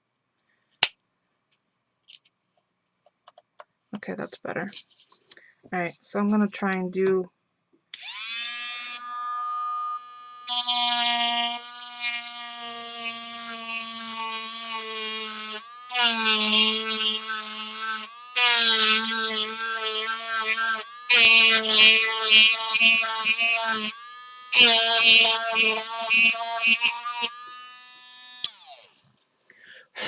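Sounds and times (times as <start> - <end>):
rotary tool motor whining: 8.0 - 29.0.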